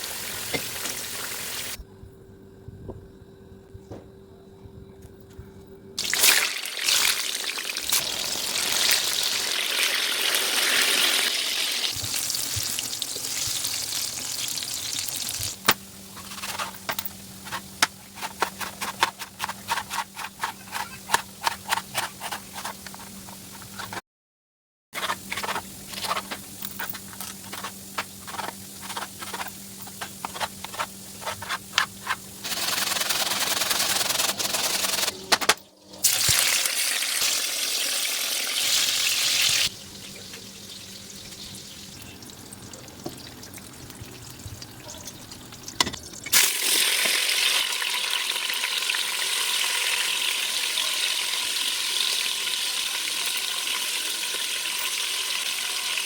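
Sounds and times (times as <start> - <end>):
food sizzling in hot oil: 0.0 - 1.8, 6.0 - 24.0, 36.0 - 56.0
utensil clicks and scrapes: 16.2 - 24.0, 25.0 - 35.2.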